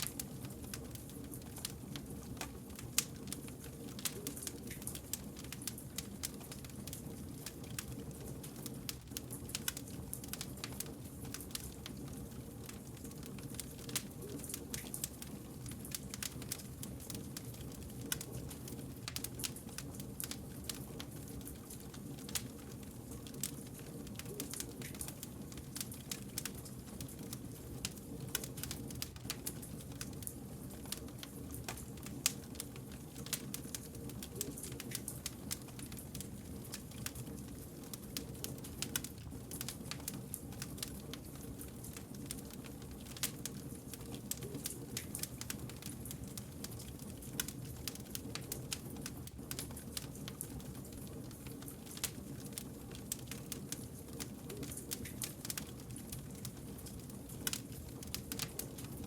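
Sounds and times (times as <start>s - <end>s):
wood fire crackling and popping: 0.0s - 59.0s.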